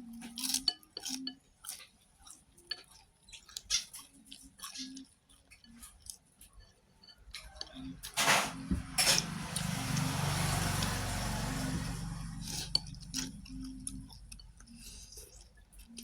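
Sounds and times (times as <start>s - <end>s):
vehicle passing by: 8.1s - 14.2s.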